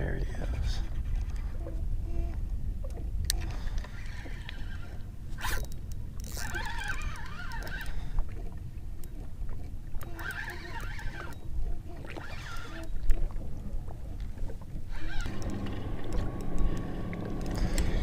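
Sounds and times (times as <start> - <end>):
water against boat: 0.0 - 18.0
wind rumbling on microphone: 0.0 - 18.0
wavering high squeal: 10.0 - 11.4
scattered clicks: 15.2 - 18.0.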